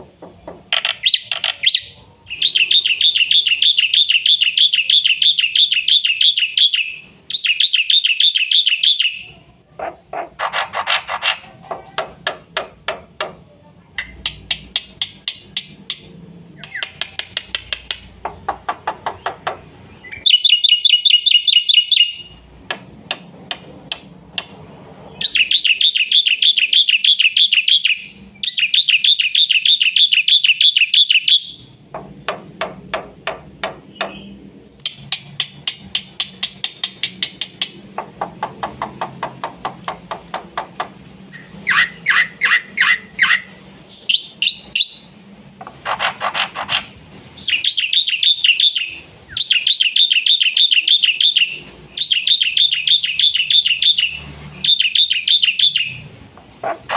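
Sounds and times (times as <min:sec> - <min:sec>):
sharp repeated bird clicks: 0:00.7 - 0:01.8, 0:14.0 - 0:24.6, 0:25.2 - 0:43.4
bird singing warbling trills: 0:00.7 - 0:09.6, 0:19.0 - 0:22.4, 0:25.1 - 0:31.7, 0:47.4 - 0:56.1.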